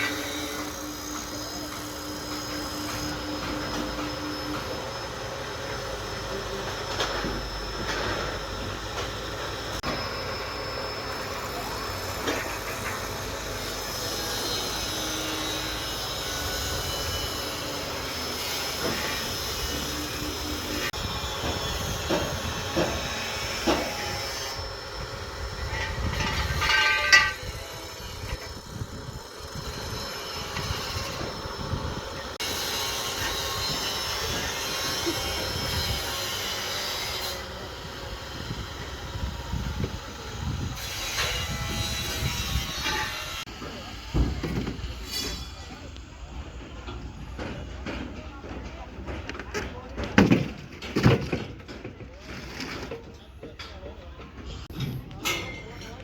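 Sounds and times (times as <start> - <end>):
heavy machinery running: 0.0 - 40.8.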